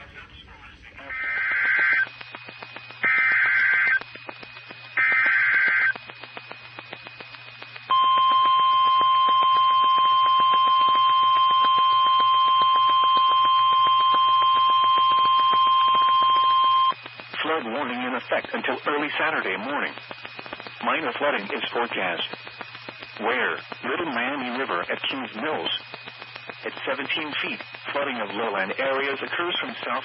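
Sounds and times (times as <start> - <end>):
crackling static clicks: 0.1 - 30.0
steady warning alarm tone: 3.0 - 4.0, 7.9 - 17.0.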